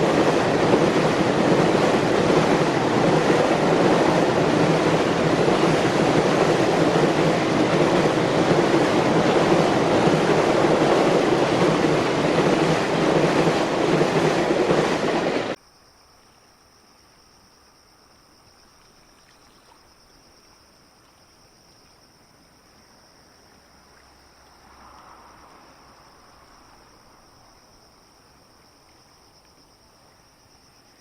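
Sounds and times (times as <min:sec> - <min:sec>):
freight train rumbling past: 0:00.0 - 0:15.6.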